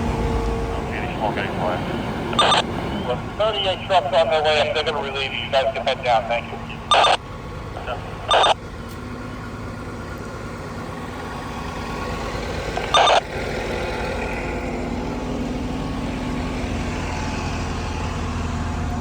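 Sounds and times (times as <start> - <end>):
fire engines droning: 0.0 - 19.0.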